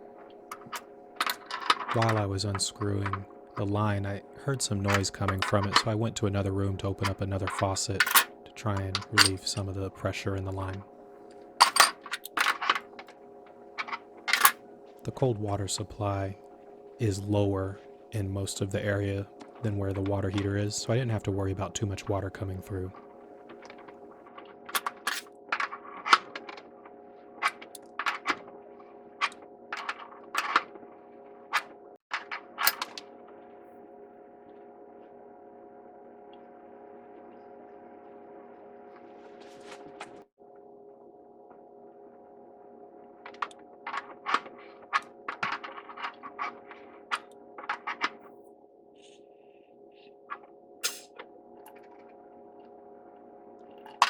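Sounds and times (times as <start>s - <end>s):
faint steady hum: 0.0s - 54.0s
wrenches clicking and scraping: 0.5s - 3.2s, 11.6s - 13.1s
wrenches clinking on pipe fittings: 11.6s - 12.8s.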